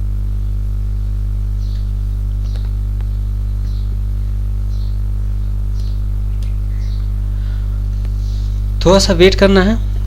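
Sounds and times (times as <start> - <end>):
electrical mains hum: 0.0 - 10.0
soft high chirps: 4.6 - 8.6.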